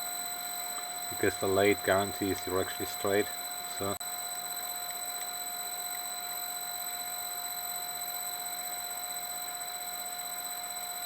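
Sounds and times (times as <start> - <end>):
lathe high whine: 0.0 - 11.0.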